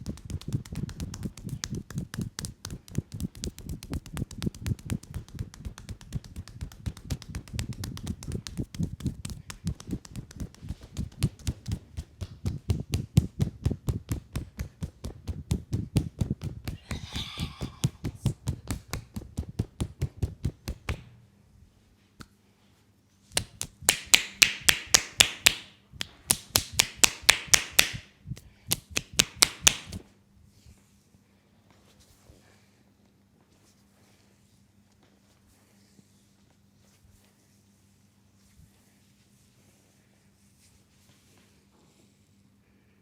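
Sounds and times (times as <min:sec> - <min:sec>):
hands tapping in massage: 0:00.0 - 0:21.2, 0:23.4 - 0:28.0, 0:28.7 - 0:30.0
sharp hand slaps: 0:00.0 - 0:21.2, 0:23.4 - 0:28.1, 0:28.7 - 0:30.0.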